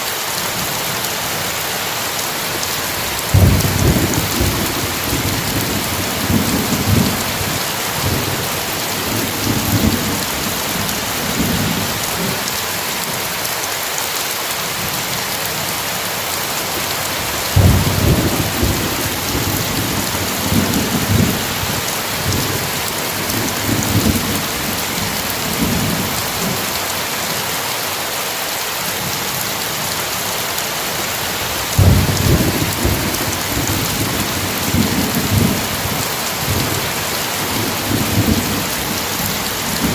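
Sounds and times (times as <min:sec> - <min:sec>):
heavy rain falling: 0:00.0 - 0:39.9
low thunder rumbling: 0:03.0 - 0:12.4, 0:17.2 - 0:26.6, 0:31.5 - 0:39.9
sharp thunder claps: 0:03.3 - 0:07.2, 0:17.5 - 0:26.5, 0:31.8 - 0:39.9.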